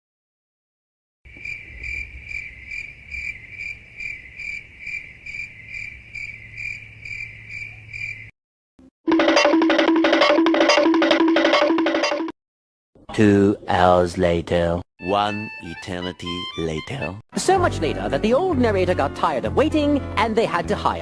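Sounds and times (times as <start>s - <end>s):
crickets chirping: 1.3s - 8.3s.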